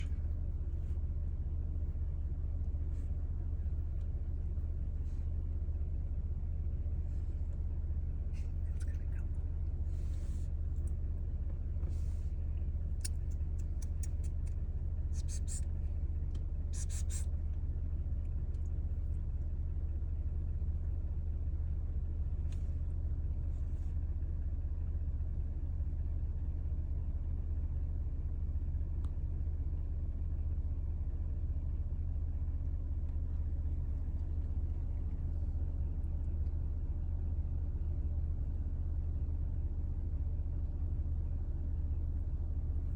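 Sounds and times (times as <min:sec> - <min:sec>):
steady low rumble: 0:00.0 - 0:42.9
faint clicks: 0:13.0 - 0:14.6.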